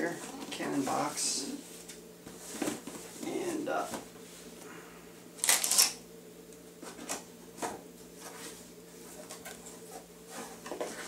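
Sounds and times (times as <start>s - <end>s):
cardboard rustling and scraping: 0.0s - 4.1s, 8.1s - 11.0s.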